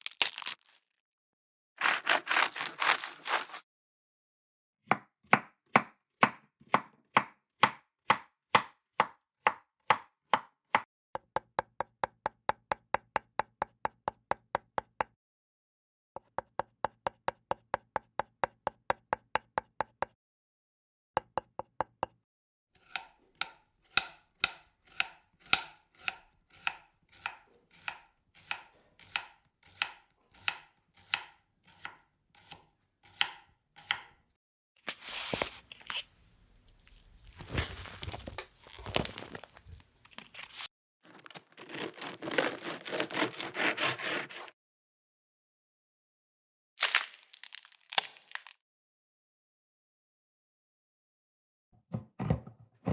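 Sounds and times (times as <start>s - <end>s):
knife chopping on cutting board: 4.9s - 10.8s, 22.8s - 34.2s, 41.6s - 44.5s, 51.9s - 52.9s.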